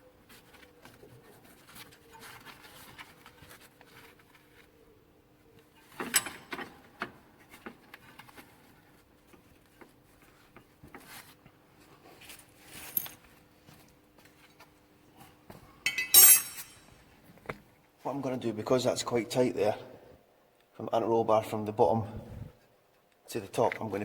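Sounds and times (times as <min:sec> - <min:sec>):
hand tools clinking on metal parts: 0:15.9 - 0:17.0.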